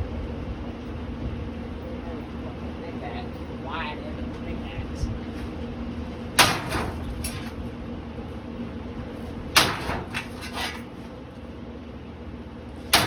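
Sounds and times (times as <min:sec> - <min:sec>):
fan parts rattling and clattering: 0:00.0 - 0:11.6, 0:12.6 - 0:13.0
axe striking ceiling fan: 0:06.4 - 0:07.5, 0:09.5 - 0:10.2.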